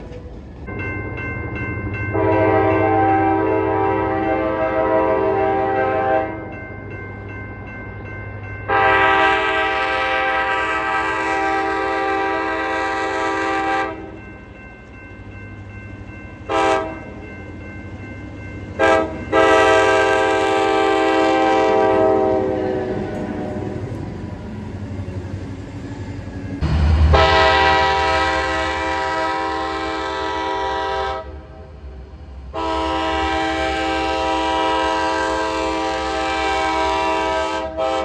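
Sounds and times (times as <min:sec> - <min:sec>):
locomotive air horn blasts: 0:02.1 - 0:06.5, 0:08.7 - 0:14.2, 0:16.5 - 0:17.0, 0:18.8 - 0:23.7, 0:26.6 - 0:31.7, 0:32.5 - 0:38.0.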